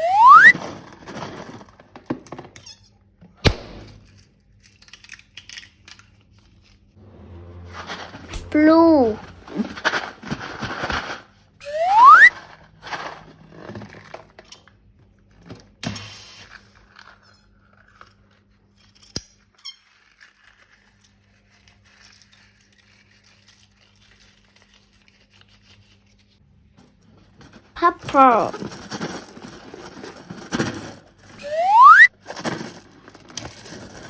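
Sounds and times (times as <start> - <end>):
balloon rubber squeak: 11.6 - 12.3.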